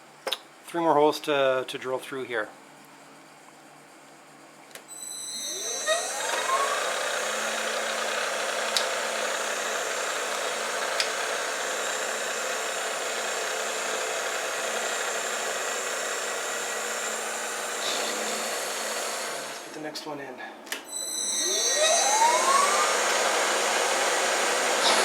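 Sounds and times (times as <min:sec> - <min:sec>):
milling machine motor whining: 0:04.9 - 0:19.8, 0:20.9 - 0:25.0.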